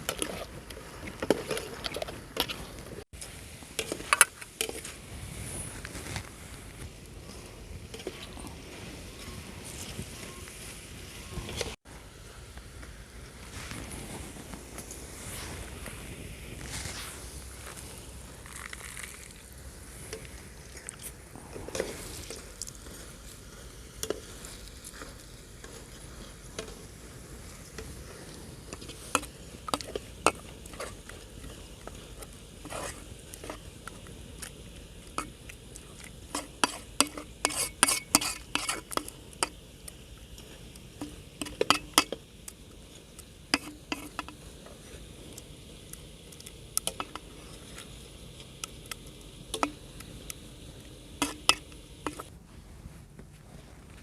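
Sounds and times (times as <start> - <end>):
fries sizzling in hot oil: 13.8 - 20.7, 21.7 - 52.3.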